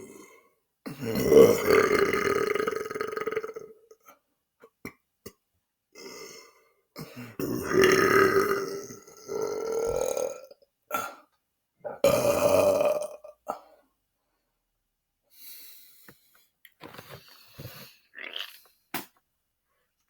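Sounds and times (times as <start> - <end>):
man belching: 0.9 - 3.9, 7.0 - 11.2, 11.8 - 13.6.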